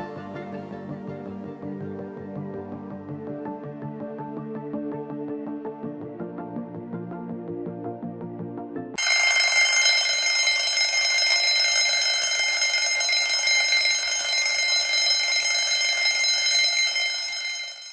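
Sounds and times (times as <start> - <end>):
background music: 0.0 - 9.0
alarm clock ringing: 9.0 - 17.9.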